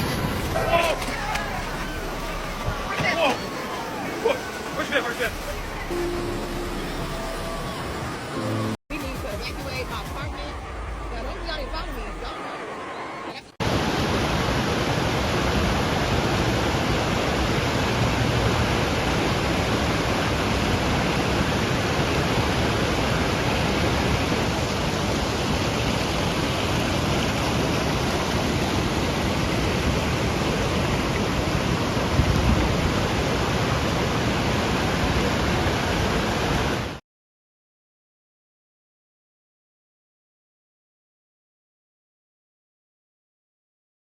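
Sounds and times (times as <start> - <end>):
loud rush of water: 0.0 - 10.5, 13.6 - 37.0.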